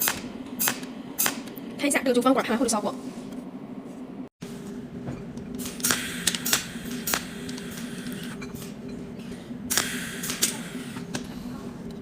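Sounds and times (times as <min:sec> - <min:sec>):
steady electrical hum: 0:00.0 - 0:12.0
welding machine snapping: 0:05.6 - 0:08.3, 0:09.7 - 0:10.7.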